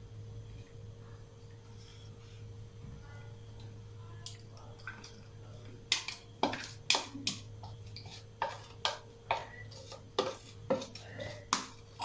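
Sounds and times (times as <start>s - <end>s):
spoon knocking on cooking vessel: 8.4s - 11.8s.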